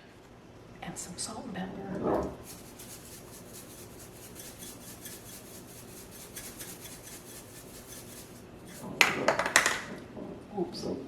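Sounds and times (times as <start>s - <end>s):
spoon scraping a pan: 2.4s - 9.0s.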